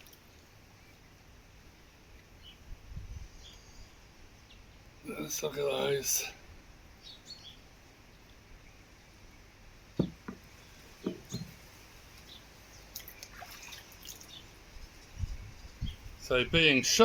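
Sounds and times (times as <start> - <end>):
stones knocking: 10.0 - 10.4, 11.0 - 11.6.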